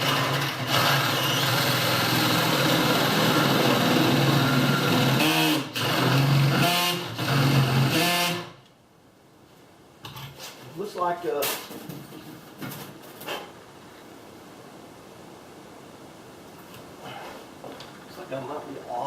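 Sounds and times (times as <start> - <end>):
power drill boring into wood: 0.0 - 8.5.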